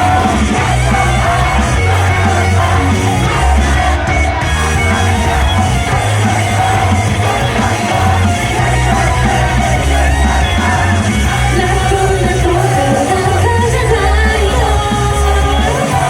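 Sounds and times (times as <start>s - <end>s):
pop song over loudspeakers: 0.0s - 16.0s.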